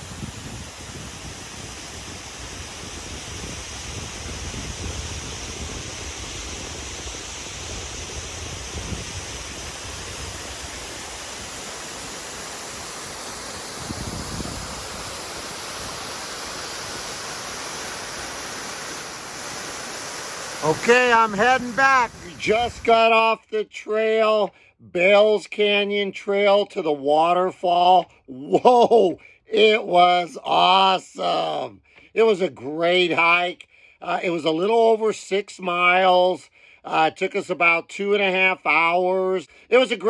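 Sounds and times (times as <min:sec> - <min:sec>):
waterfall rushing: 0:00.0 - 0:22.9.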